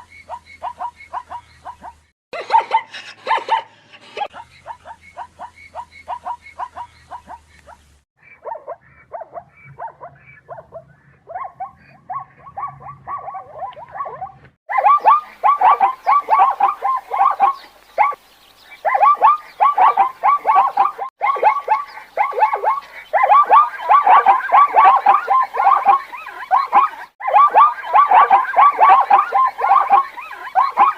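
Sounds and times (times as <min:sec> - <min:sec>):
zebras barking: 0:08.4 - 0:18.2, 0:18.8 - 0:30.9.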